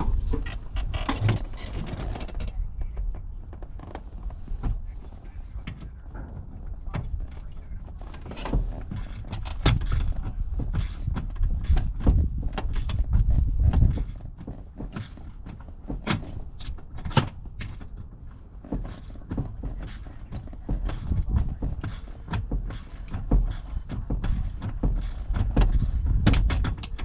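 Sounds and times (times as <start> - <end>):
heavy low rumble: 0.0 - 14.4, 19.2 - 27.0
hardware knocks and clanks: 5.6 - 27.0.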